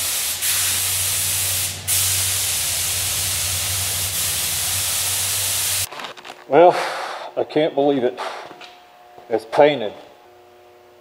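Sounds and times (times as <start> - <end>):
paint spray gun hissing: 0.0 - 5.9
motor hum: 0.6 - 5.9.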